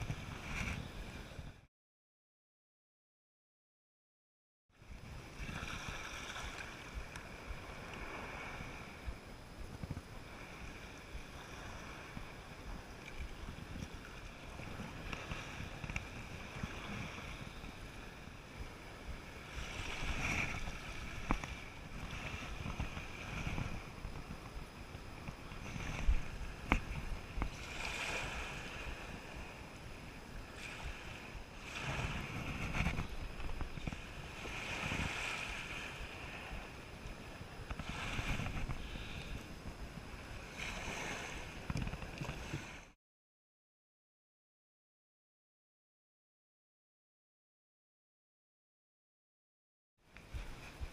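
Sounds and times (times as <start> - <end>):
surf washing on a beach: 0.0 - 1.6, 4.8 - 43.0, 50.0 - 50.9
wind buffeting microphone: 0.0 - 1.7, 4.8 - 42.8, 50.2 - 50.9.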